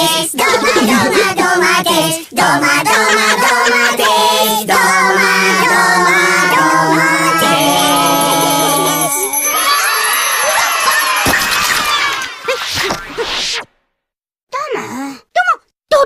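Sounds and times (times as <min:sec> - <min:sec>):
child-like singing voice: 0:00.0 - 0:09.8
backing music: 0:04.8 - 0:10.2.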